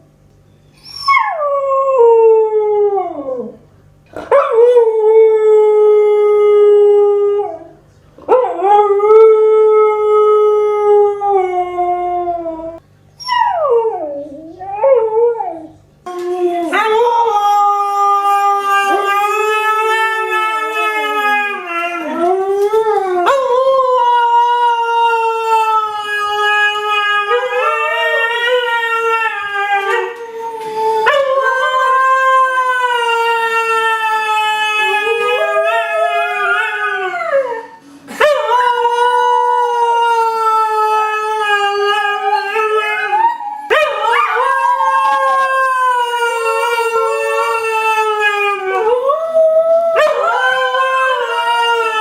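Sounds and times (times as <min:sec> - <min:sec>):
puppy howling: 0:08.3 - 0:52.0.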